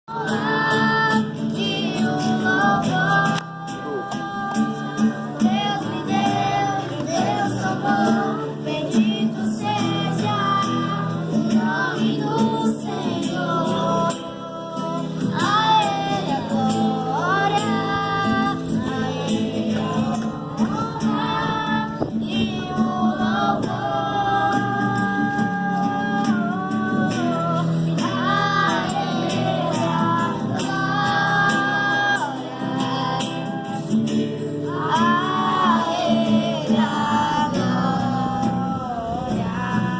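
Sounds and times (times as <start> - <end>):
person singing: 0.1 - 39.9.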